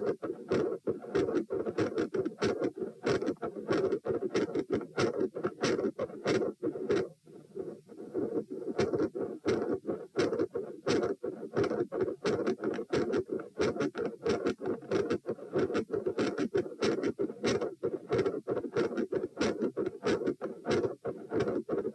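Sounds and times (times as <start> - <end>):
rapid scratchy clicks: 0.0 - 21.9.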